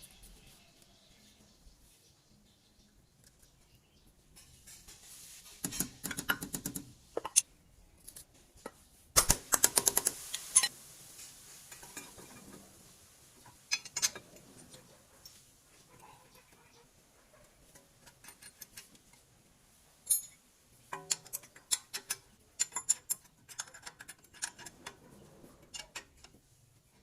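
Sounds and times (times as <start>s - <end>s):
metal tools clinking and rattling: 20.0s - 25.0s.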